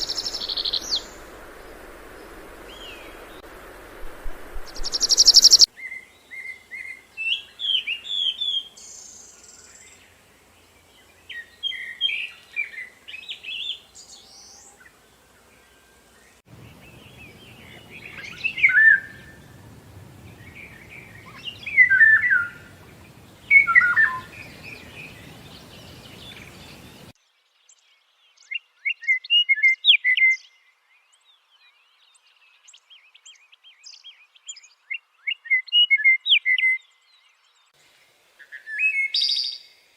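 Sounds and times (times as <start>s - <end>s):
songbirds singing: 0.0s - 3.5s, 4.6s - 29.5s
background hiss: 0.0s - 27.2s, 37.5s - 39.9s.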